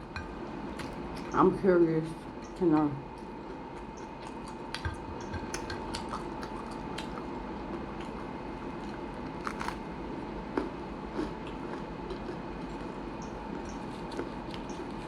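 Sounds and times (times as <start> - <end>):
faint steady hum: 0.0 - 15.0
person chewing: 3.2 - 9.8, 10.5 - 15.0.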